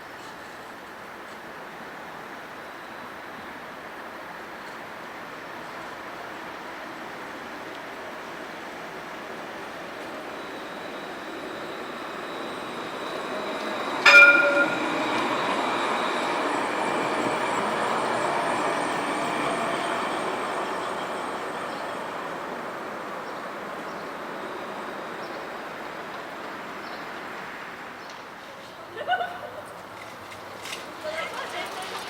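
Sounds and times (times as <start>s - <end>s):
tram rolling on rails: 0.0s - 32.0s
tram warning bell ringing: 9.3s - 26.5s.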